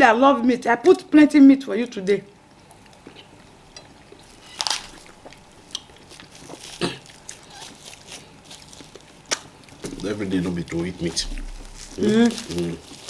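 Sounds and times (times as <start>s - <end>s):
wet chewing: 2.5s - 13.0s
lip smacks: 9.2s - 12.8s.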